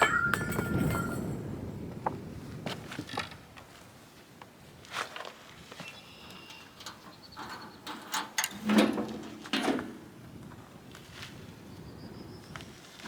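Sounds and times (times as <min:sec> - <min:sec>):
metallic clanks and knocks: 0:00.0 - 0:01.3
metallic ring: 0:00.0 - 0:01.4.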